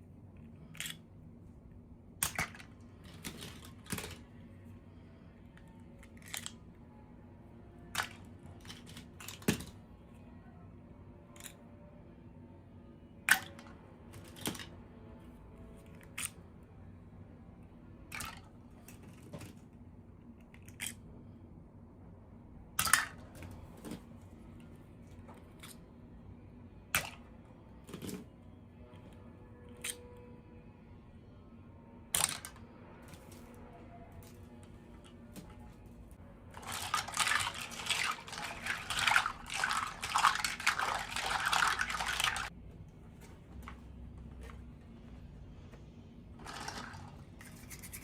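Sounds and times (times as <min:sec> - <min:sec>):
faint steady hum: 0:00.0 - 0:48.0
plastic pieces clicking: 0:02.2 - 0:04.3, 0:05.6 - 0:06.7, 0:07.9 - 0:09.8, 0:20.4 - 0:21.0, 0:36.6 - 0:42.5.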